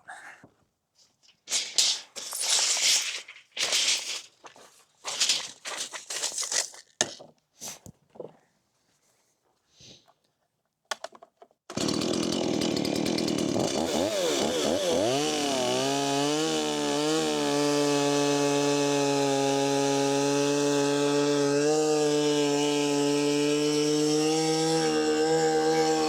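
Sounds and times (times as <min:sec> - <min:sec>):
chainsaw cutting wood: 0:11.7 - 0:26.0.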